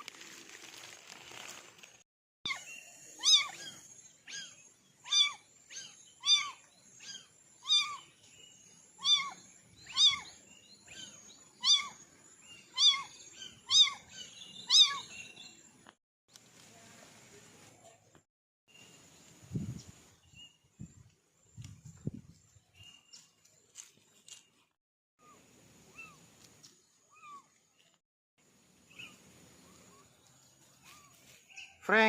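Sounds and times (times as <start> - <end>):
kitten meowing: 3.2 - 3.7, 5.1 - 5.4, 6.2 - 6.6, 7.6 - 8.0, 9.0 - 10.3, 11.6 - 12.0, 12.8 - 13.1, 13.7 - 14.0, 14.7 - 15.0.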